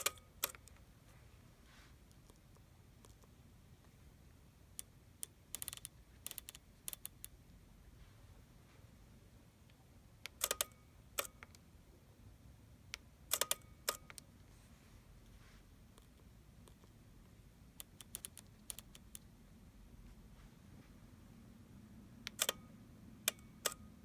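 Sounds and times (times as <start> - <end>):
camera mechanical clicks: 5.5 - 7.3, 10.3 - 11.6, 22.3 - 22.6.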